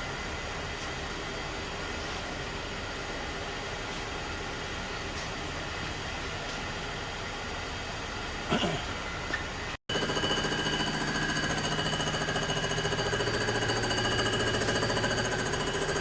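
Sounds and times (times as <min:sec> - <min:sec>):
head surfacer machine running: 0:09.9 - 0:16.0.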